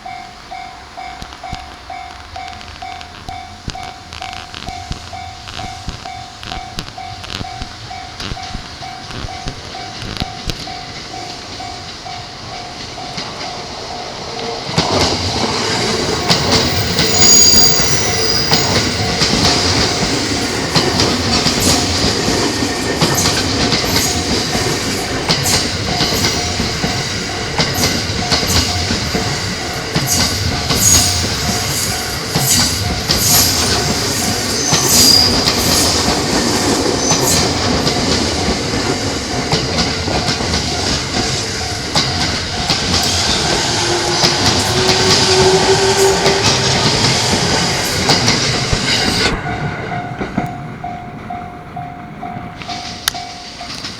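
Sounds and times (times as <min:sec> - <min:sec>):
crossing warning bell: 0:00.0 - 0:53.9
train wheels clattering: 0:00.0 - 0:53.9
wheel squeals: 0:15.7 - 0:20.7, 0:21.5 - 0:38.6.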